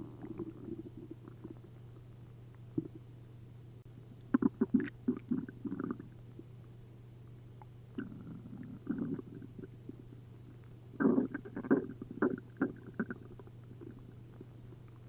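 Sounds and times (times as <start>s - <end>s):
stomach gurgling: 0.0s - 2.0s, 2.7s - 3.0s, 4.3s - 6.5s, 7.6s - 15.0s.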